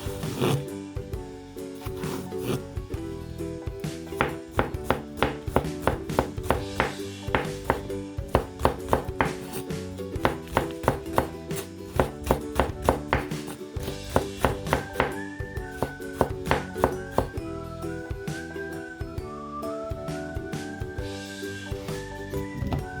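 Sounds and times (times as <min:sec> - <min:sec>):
background music: 0:00.0 - 0:23.0
knife chopping on cutting board: 0:00.2 - 0:00.6, 0:01.9 - 0:02.6, 0:04.2 - 0:17.3
whistled tune: 0:14.6 - 0:23.0.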